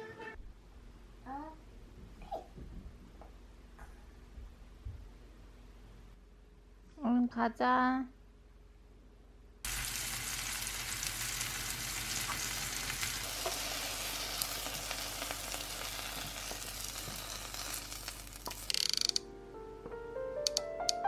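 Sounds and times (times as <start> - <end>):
food sizzling in a hot pan: 9.7 - 18.7.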